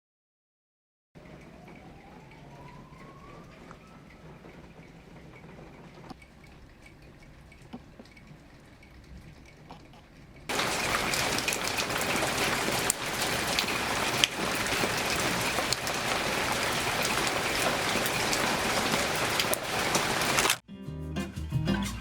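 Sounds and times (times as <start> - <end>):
rain pattering: 1.2 - 20.6.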